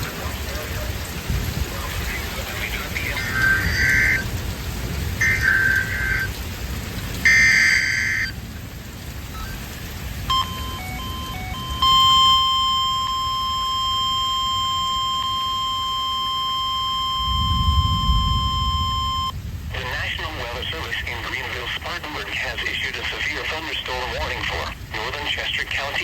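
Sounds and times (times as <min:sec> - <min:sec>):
steady warning alarm tone: 0:05.2 - 0:06.3, 0:07.3 - 0:08.4, 0:10.3 - 0:19.3
screeching digital alert burst: 0:07.3 - 0:08.3
short beeps: 0:07.3 - 0:08.3, 0:10.3 - 0:19.3.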